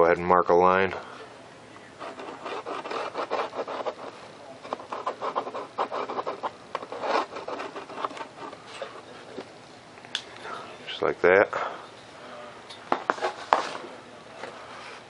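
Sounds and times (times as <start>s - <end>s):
pen scratching along ruler: 2.0s - 9.2s.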